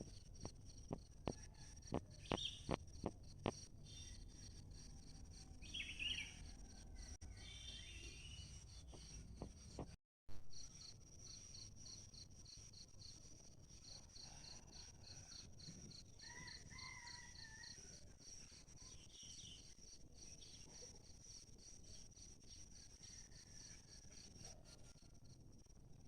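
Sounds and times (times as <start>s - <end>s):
insects chirping: 0.0s - 9.9s.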